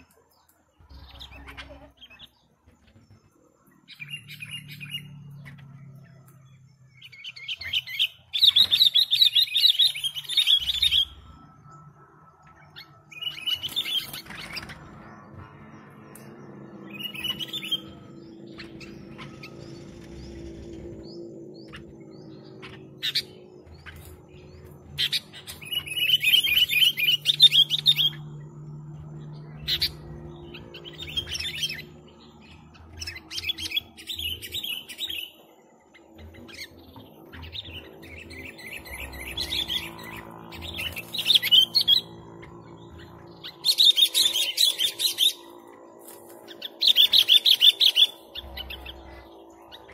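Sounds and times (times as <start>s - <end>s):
bulbul singing warbling phrases: 0.8s - 2.5s.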